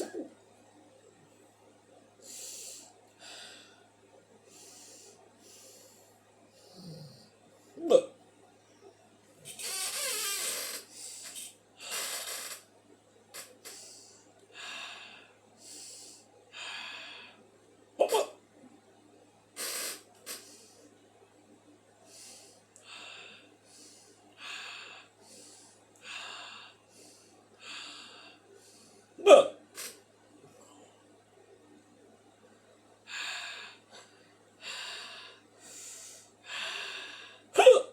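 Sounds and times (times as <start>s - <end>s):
person hiccuping: 0.0s - 0.3s, 7.8s - 8.2s, 18.0s - 18.4s, 29.2s - 29.6s, 37.6s - 37.9s
person breathing heavily: 2.2s - 3.9s, 4.5s - 7.8s, 10.4s - 12.6s, 13.6s - 17.4s, 20.3s - 20.9s, 22.0s - 29.1s, 33.1s - 37.5s.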